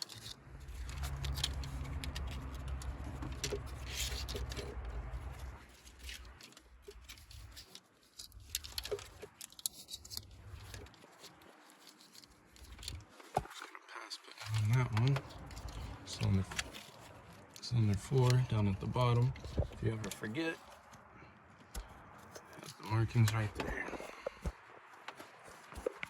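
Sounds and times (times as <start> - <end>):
parts clicking and scraping: 0.0 - 26.0
low steady hum: 0.2 - 7.6, 14.2 - 24.8.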